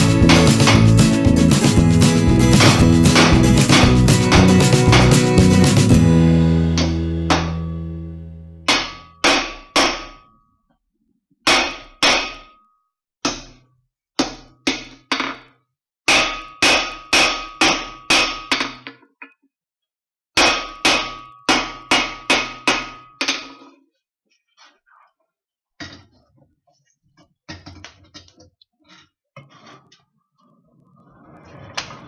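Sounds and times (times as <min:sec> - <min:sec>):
hammer clanging on anvil: 0:00.0 - 0:06.0, 0:06.7 - 0:07.9, 0:08.6 - 0:10.2.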